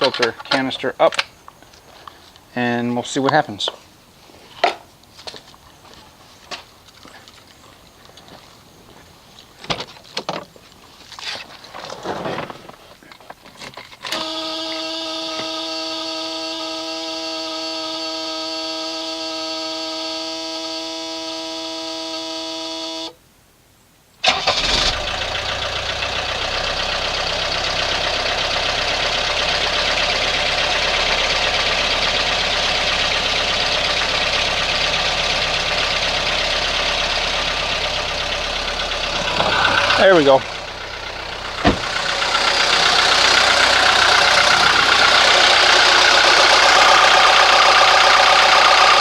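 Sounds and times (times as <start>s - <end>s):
diesel engine starting and running: 14.1s - 22.3s, 24.2s - 49.0s
steady whine: 25.0s - 49.0s.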